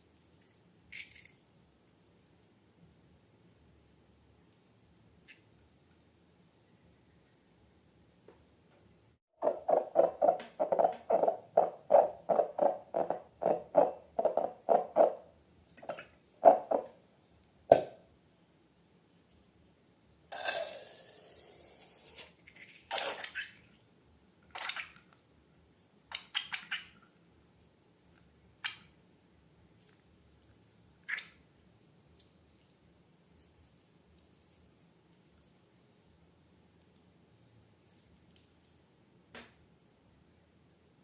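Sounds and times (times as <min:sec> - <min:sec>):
wet slime squelches: 0:22.3 - 0:23.8, 0:24.4 - 0:29.0, 0:29.6 - 0:39.0.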